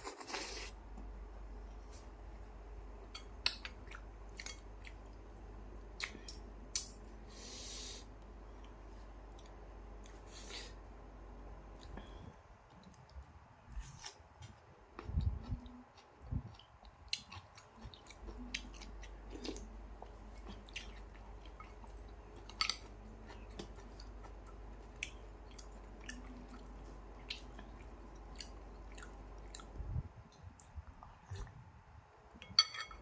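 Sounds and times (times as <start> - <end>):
person chewing and eating: 11.7 - 31.6.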